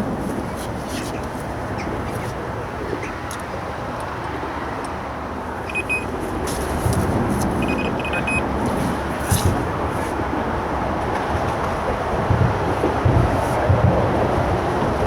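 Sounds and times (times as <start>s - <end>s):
traffic passing: 0.0s - 15.0s
high beeps: 5.6s - 6.1s, 7.6s - 8.5s.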